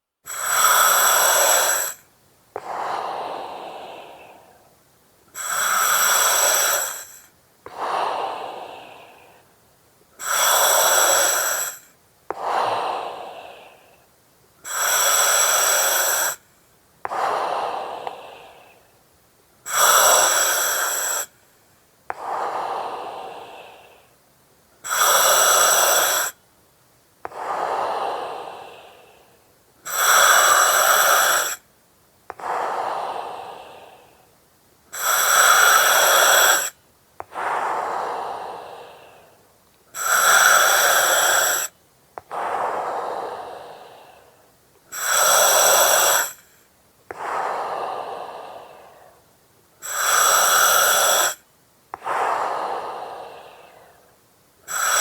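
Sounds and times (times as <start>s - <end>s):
breathing through oxygen mask: 0.3s - 2.0s, 2.6s - 4.7s, 5.3s - 9.5s, 10.2s - 14.0s, 14.6s - 16.4s, 17.1s - 18.8s, 19.6s - 21.4s, 24.8s - 26.4s, 27.3s - 31.6s, 32.3s - 34.3s, 34.9s - 49.2s, 49.8s - 51.4s, 52.0s - 54.1s, 54.7s - 55.0s.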